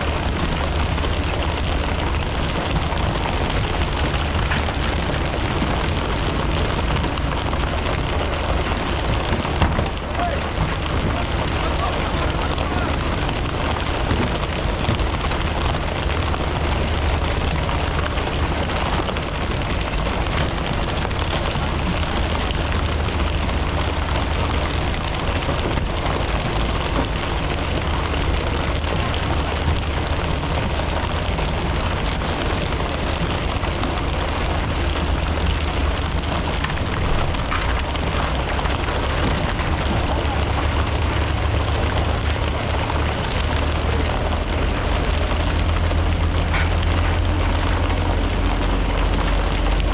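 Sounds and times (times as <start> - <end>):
boat engine rumble: 0.0 - 49.9
wind: 0.0 - 49.9.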